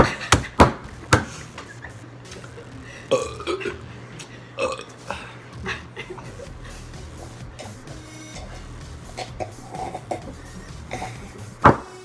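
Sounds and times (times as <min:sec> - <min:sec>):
person burping: 0:02.6 - 0:11.7.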